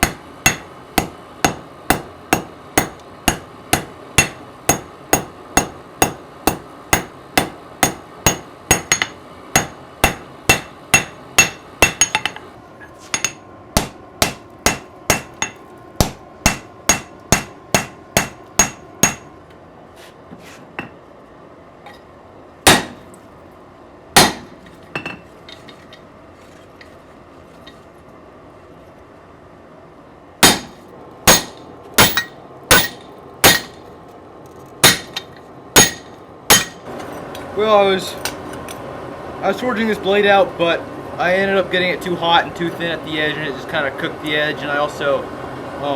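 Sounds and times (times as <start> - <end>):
hammer ringing on anvil: 0.0 - 12.4, 13.2 - 19.3, 24.2 - 25.2, 30.4 - 33.8, 35.8 - 36.8.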